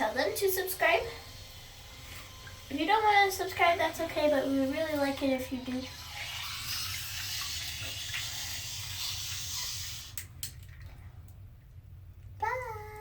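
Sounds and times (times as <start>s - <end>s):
water splashing in tub: 2.1s - 11.3s.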